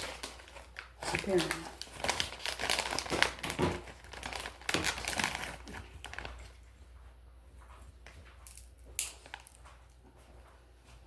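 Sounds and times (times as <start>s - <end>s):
snack wrapper crinkling: 0.0s - 6.5s.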